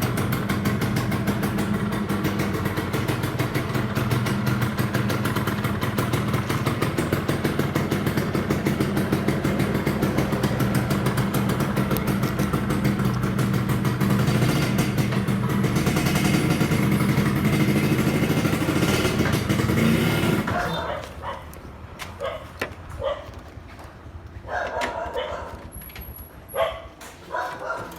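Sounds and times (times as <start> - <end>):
two-stroke motorcycle engine running: 0.0 - 21.7.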